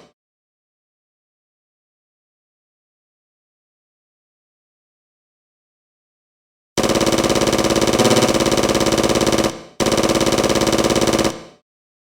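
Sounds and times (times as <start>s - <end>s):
machine gun rapid fire: 6.8s - 11.6s.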